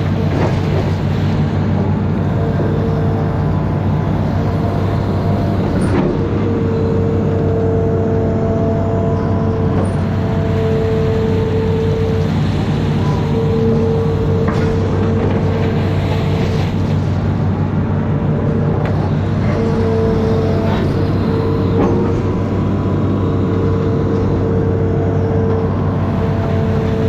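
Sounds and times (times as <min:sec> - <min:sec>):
diesel engine running under load: 0:00.0 - 0:27.0
high-pitched whine: 0:01.5 - 0:27.0.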